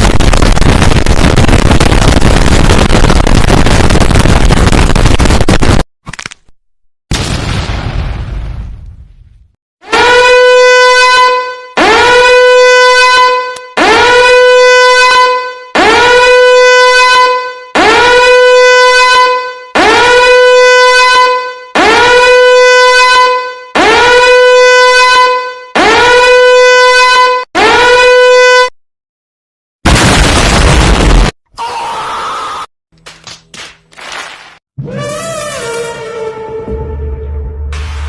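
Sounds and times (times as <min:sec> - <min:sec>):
explosion effect: 0:00.0 - 0:05.8, 0:07.1 - 0:09.5, 0:29.8 - 0:31.4, 0:37.6 - 0:38.0
horn blasts: 0:09.8 - 0:28.7, 0:34.8 - 0:37.8.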